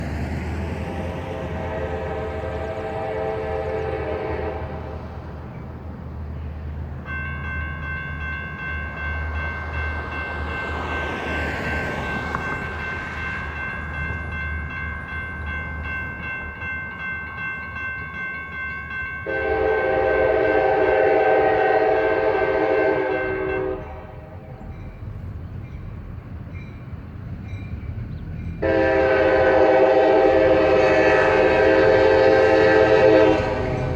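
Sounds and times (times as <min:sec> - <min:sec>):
crossing warning bells dinging: 0:00.0 - 0:33.9
locomotive horn blasts: 0:00.8 - 0:05.3, 0:19.2 - 0:24.7, 0:28.6 - 0:33.9.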